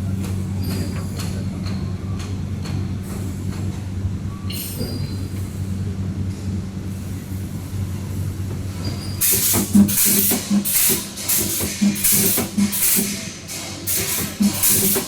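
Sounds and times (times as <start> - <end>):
spot welding machine humming: 9.2 - 15.0.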